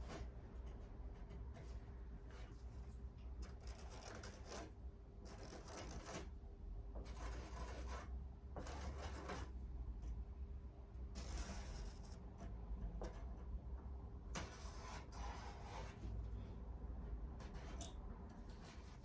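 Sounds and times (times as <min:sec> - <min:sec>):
scraping on sheet steel: 0:03.4 - 0:06.4, 0:11.1 - 0:13.3, 0:14.4 - 0:16.2.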